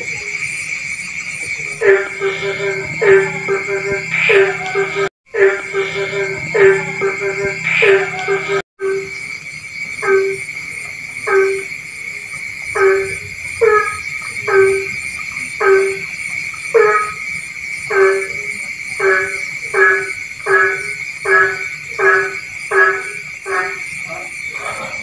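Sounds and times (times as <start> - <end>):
frog croaking: 0.0 - 25.0
steady high-pitched drone: 1.5 - 9.2, 10.0 - 10.5.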